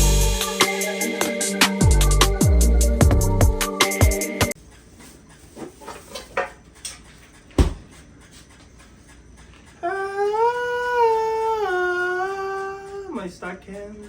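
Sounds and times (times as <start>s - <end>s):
sharp knock: 7.6s - 7.9s
person humming: 9.8s - 13.2s.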